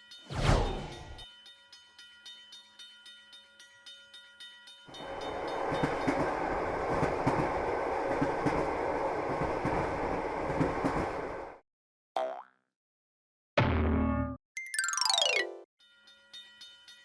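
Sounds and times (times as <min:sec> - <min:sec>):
train rushing past: 0:05.0 - 0:11.6
train wheels clattering on rails: 0:05.0 - 0:11.6.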